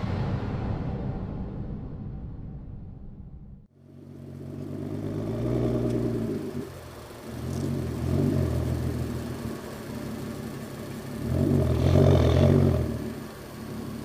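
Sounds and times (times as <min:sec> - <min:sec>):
car engine revving: 0:03.7 - 0:14.0.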